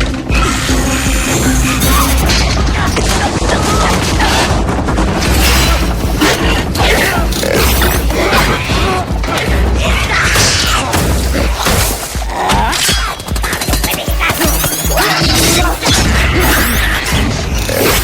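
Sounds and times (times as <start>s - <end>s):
dramatic music score: 0.0s - 18.0s
metallic impacts: 1.4s - 3.4s, 4.7s - 12.4s.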